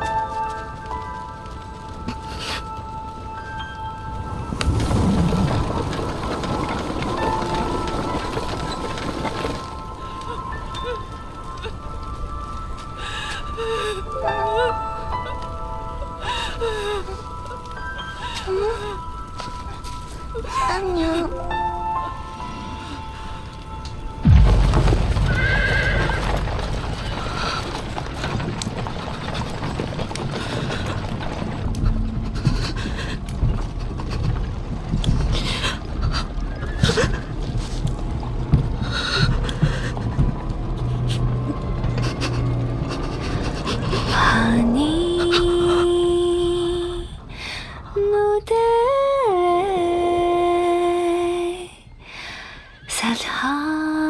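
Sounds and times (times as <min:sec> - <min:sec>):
low rumble: 0:03.5 - 0:48.1
hoofbeats: 0:23.8 - 0:44.5
horse whinnying: 0:25.3 - 0:26.4
woman humming: 0:44.0 - 0:47.2.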